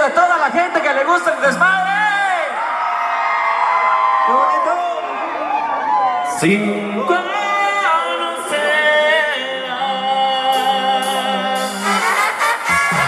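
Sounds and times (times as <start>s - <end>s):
sustained band chords: 11.0s - 13.0s.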